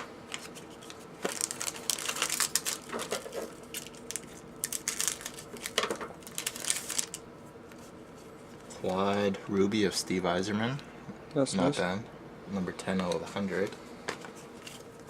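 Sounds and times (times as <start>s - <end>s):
cards and wrapper crinkling: 0.3s - 7.2s.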